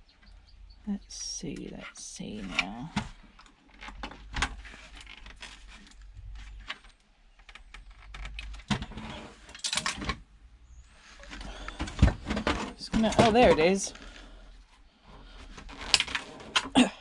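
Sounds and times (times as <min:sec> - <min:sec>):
plastic and metal parts clicking: 0:02.5 - 0:08.9, 0:15.5 - 0:16.8
clatter of parts: 0:02.6 - 0:10.2, 0:15.4 - 0:16.8.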